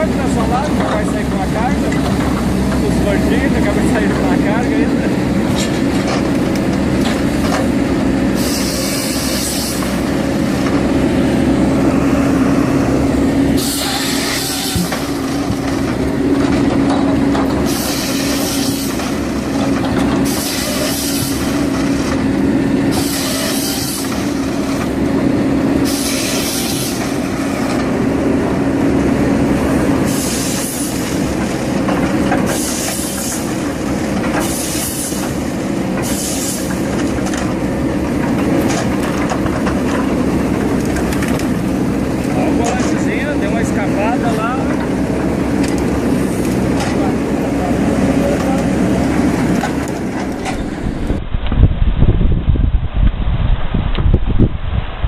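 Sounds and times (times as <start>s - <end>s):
heavy machine engine running: 0.0s - 54.0s.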